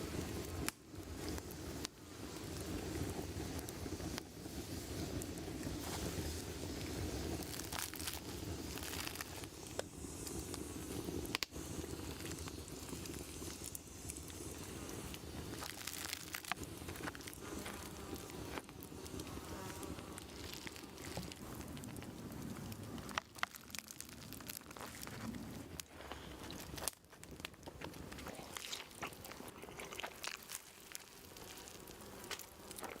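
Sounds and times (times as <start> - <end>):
campfire crackling: 0.0 - 33.0
fire snapping: 0.0 - 33.0
crunchy sandwich bites and chewing: 15.6 - 21.4, 23.0 - 25.5, 26.1 - 33.0.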